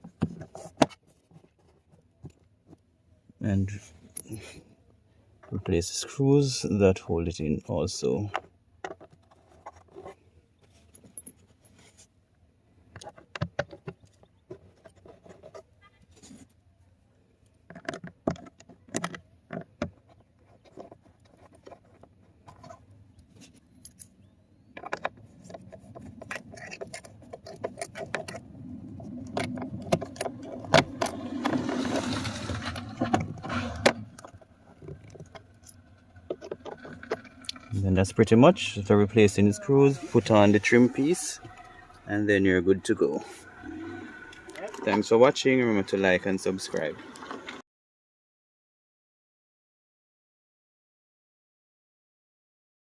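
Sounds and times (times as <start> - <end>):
clicks and taps of screws and tools: 17.7 - 20.0
scraping and rattling: 24.7 - 45.1.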